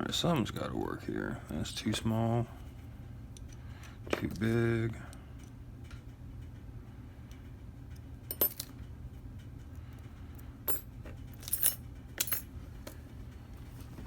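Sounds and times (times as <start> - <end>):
low steady hum: 0.0 - 14.0
metal wrenches clinking: 10.7 - 12.4.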